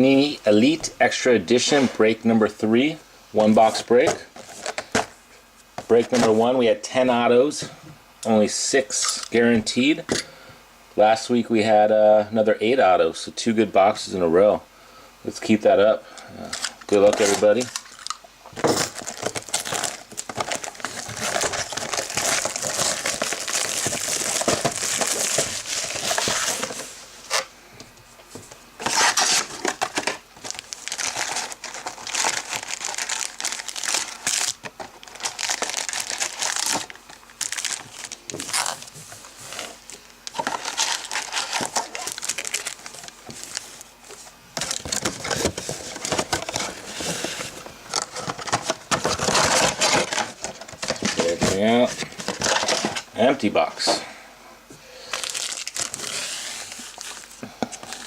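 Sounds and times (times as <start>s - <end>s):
plastic wrapping crinkling: 18.8s - 27.4s, 28.8s - 53.0s, 55.1s - 58.0s.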